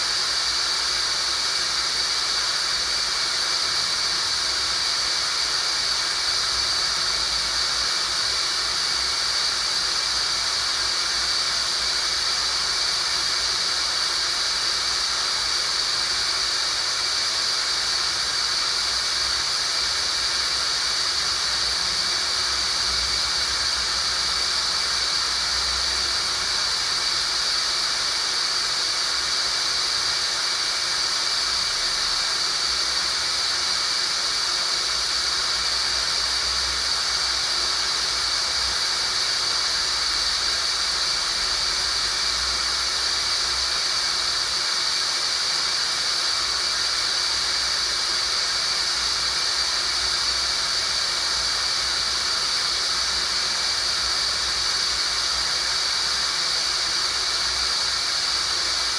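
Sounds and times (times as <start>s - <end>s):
high-pitched hiss: 0.0s - 58.9s.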